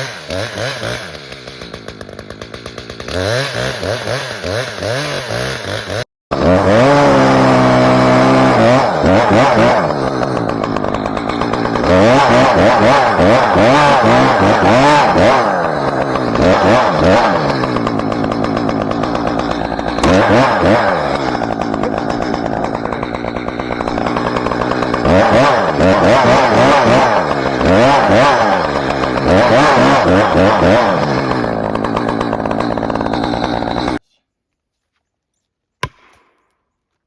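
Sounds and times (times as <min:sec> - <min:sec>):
chainsaw cutting wood: 0:00.0 - 0:34.0, 0:35.8 - 0:36.5.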